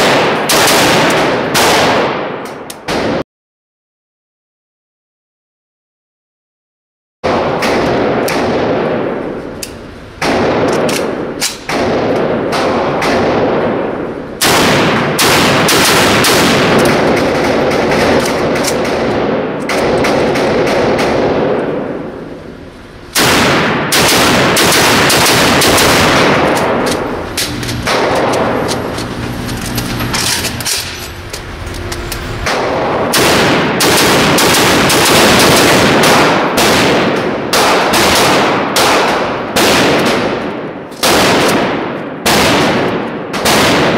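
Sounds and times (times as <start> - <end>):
gunshot echoes: 0.0 - 3.2, 10.2 - 22.1, 23.2 - 27.2, 27.8 - 28.6, 32.4 - 43.9
rifle shots rapid fire: 0.0 - 3.2, 7.2 - 9.4, 10.2 - 22.3, 23.1 - 29.0, 32.4 - 43.9.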